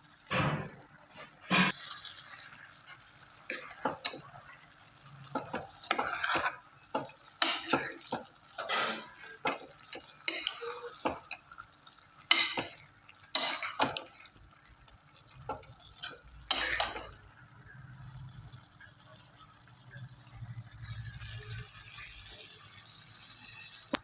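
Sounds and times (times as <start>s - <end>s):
spoon scraping in cooking pot: 1.1s - 11.6s, 12.2s - 14.4s, 15.4s - 17.2s.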